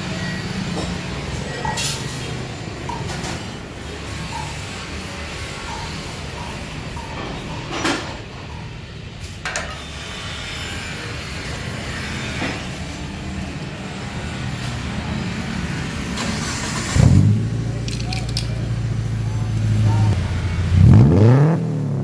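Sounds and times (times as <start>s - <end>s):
vehicle engine idling: 12.9s - 22.0s.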